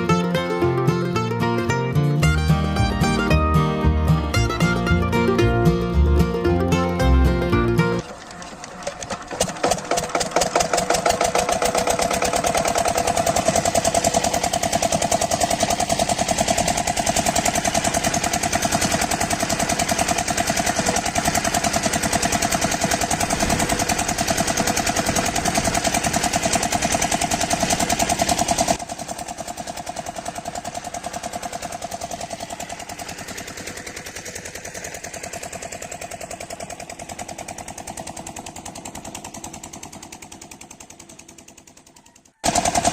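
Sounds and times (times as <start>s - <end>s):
small engine running: 0.0s - 42.9s.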